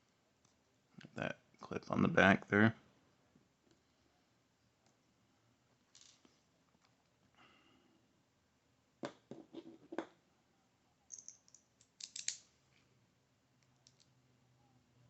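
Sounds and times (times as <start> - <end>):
metallic lock clicks and scrapes: 11.9 - 12.5.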